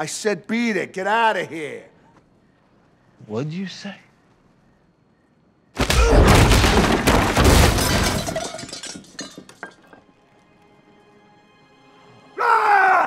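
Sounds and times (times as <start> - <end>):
glass shattering: 5.8 - 10.0
shards clinking and clattering: 6.4 - 10.1.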